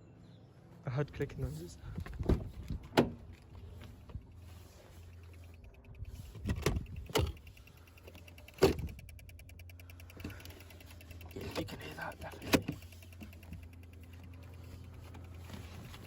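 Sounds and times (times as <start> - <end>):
fast faint ticking: 4.2 - 16.0
car starter clicking: 4.9 - 16.0.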